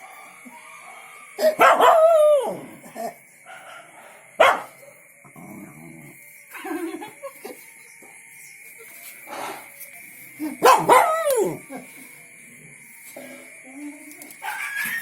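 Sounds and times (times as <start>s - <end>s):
dog barking: 1.4s - 2.2s, 3.5s - 4.8s, 10.6s - 11.6s.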